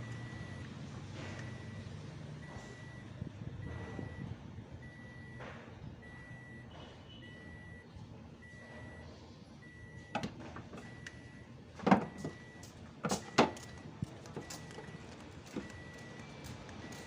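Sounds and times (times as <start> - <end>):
faint high beep: 6.0 - 10.1.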